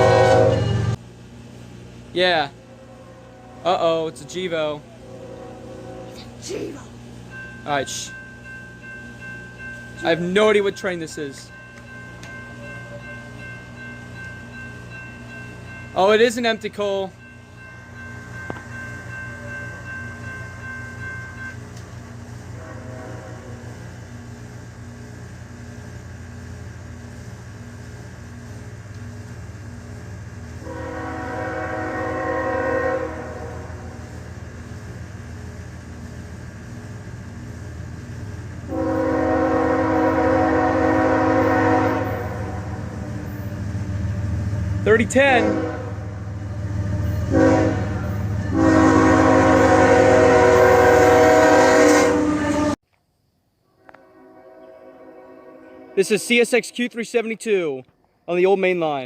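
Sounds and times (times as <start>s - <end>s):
locomotive horn blast: 0.0s - 1.0s, 2.4s - 6.4s, 22.5s - 23.8s, 30.6s - 34.2s, 38.7s - 52.8s, 53.8s - 56.4s
train rumble: 0.0s - 52.8s.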